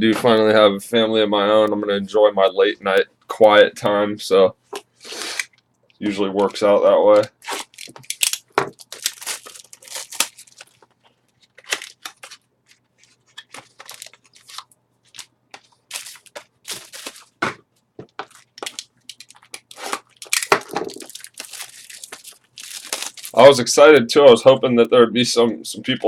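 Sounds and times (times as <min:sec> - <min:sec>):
cardboard crunching: 0:06.4 - 0:23.6
wrappers crinkling and tearing: 0:07.2 - 0:17.4, 0:18.2 - 0:23.6.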